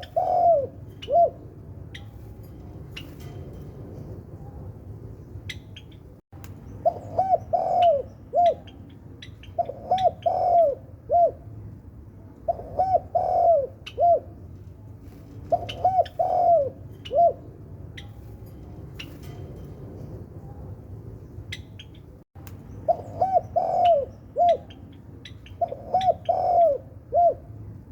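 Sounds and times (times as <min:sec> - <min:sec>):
dove cooing: 0:00.0 - 0:01.6, 0:06.8 - 0:11.5, 0:12.4 - 0:14.4, 0:15.4 - 0:17.6, 0:22.9 - 0:27.6
small birds chirping: 0:20.1 - 0:26.9.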